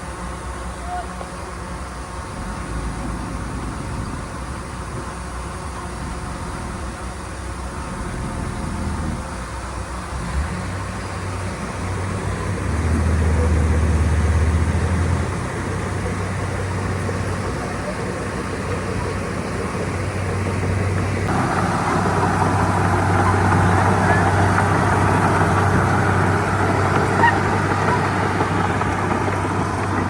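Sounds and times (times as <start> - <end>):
heavy machinery diesel engine: 0.0 - 30.0.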